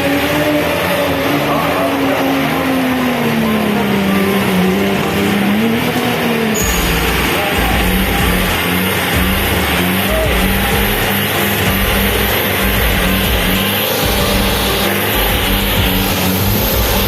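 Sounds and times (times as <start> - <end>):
engine running under load: 0.0 - 17.0
deep bass sound: 6.6 - 17.0.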